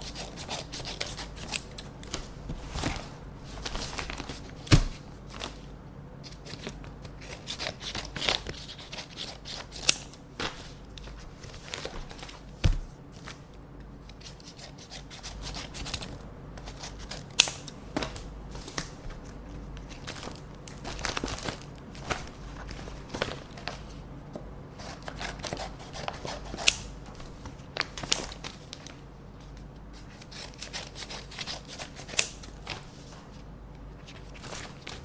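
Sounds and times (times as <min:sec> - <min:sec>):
scissors snipping paper: 0:00.0 - 0:01.8, 0:06.3 - 0:10.2, 0:14.1 - 0:17.8, 0:24.8 - 0:26.9, 0:30.0 - 0:32.4
paper rustling: 0:00.1 - 0:13.5, 0:24.8 - 0:35.0.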